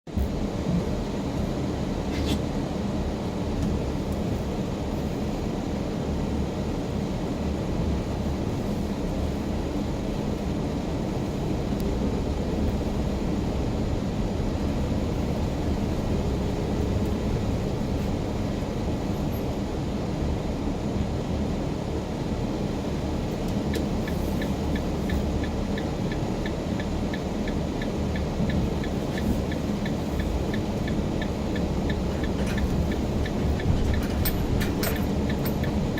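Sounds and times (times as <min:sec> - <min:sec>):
car road and engine rumble: 0:00.1 - 0:35.9
light ticking: 0:23.4 - 0:35.9.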